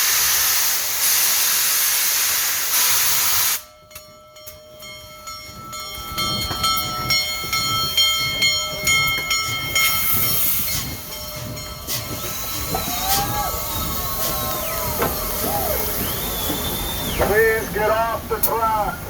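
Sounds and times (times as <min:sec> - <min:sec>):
loud steam hiss: 0:00.0 - 0:03.7, 0:09.8 - 0:19.0
wheels knocking over rail joints: 0:05.5 - 0:19.0
high wheel squealing: 0:06.9 - 0:18.3.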